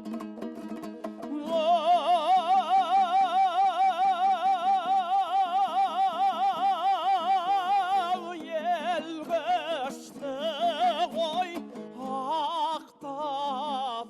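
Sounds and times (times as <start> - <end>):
strummed strings: 0.0 - 14.0
man singing with vibrato: 0.7 - 14.0.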